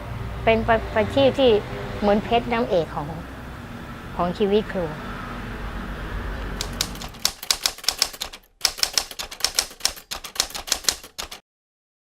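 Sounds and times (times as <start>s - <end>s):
typewriter keys clacking: 6.6s - 11.4s.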